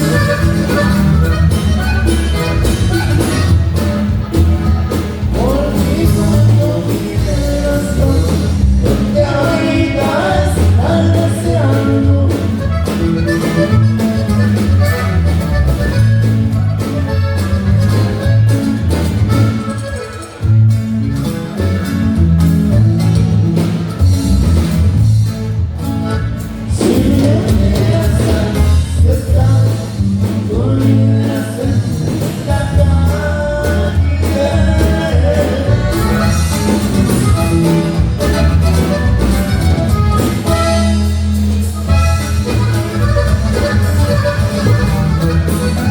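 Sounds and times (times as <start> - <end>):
band music with bass line: 0.0 - 45.9
person singing: 5.2 - 12.7, 26.7 - 36.8.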